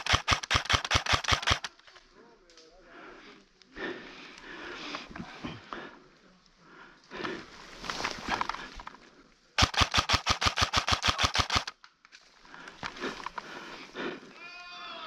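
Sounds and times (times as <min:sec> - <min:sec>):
airsoft gun full-auto burst: 0:00.0 - 0:01.7, 0:09.6 - 0:11.8.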